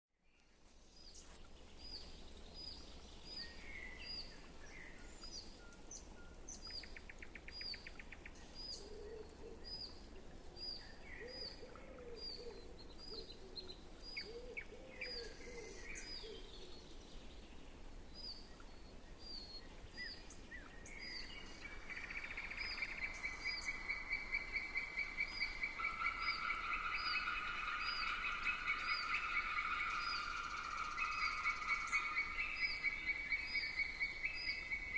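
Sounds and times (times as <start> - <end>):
frog chorus trilling: 23.4 - 34.2.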